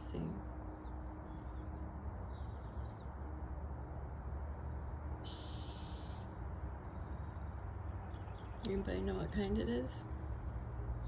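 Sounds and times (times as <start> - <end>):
bird chirping: 0.1 - 3.2, 4.2 - 9.4.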